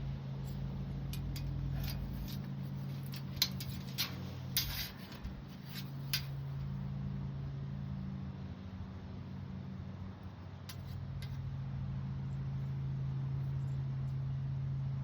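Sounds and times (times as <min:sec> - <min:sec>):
metal screening clicks and scrapes: 0:00.0 - 0:06.8, 0:10.7 - 0:11.5
steady low hum: 0:00.0 - 0:15.0.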